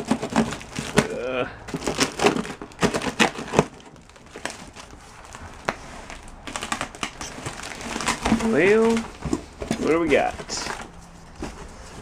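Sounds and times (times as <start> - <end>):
box clicks and knocks: 0.0 - 4.8, 6.5 - 12.0
rustling: 0.0 - 12.0.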